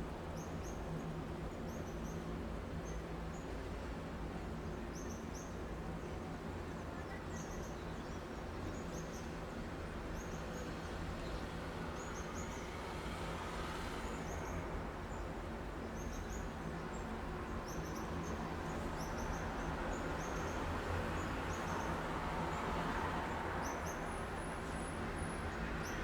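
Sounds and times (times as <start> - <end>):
distant traffic hum: 9.6 - 26.0.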